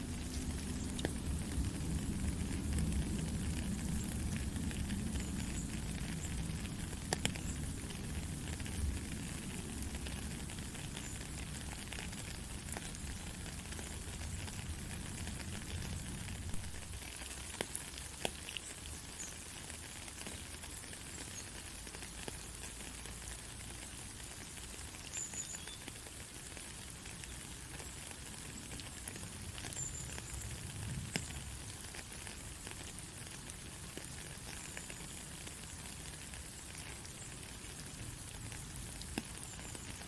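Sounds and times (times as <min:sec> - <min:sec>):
heavy rain hissing: 0:00.0 - 0:19.9
raindrops ticking close by: 0:00.0 - 0:40.0.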